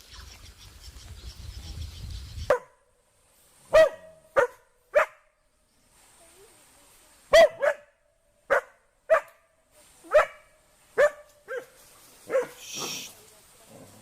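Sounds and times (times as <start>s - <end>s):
dog barking: 2.5s - 2.8s, 3.7s - 5.3s, 7.3s - 9.4s, 10.1s - 13.1s.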